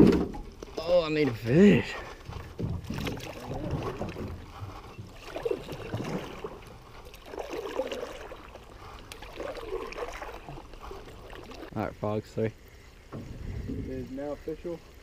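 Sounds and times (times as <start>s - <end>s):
water sloshing around boat: 0.0s - 15.0s
low knocks on boat: 2.2s - 5.2s, 13.1s - 14.0s.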